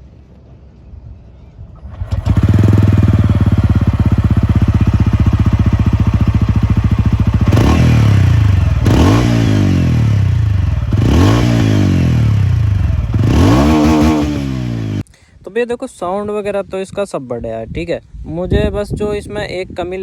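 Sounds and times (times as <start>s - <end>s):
motorcycle engine idling and revving: 1.7s - 15.0s.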